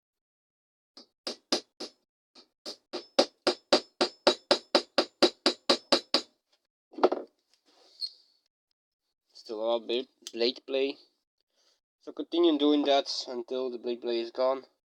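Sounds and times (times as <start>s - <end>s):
hammer striking metal: 1.3s - 1.9s, 2.7s - 6.3s.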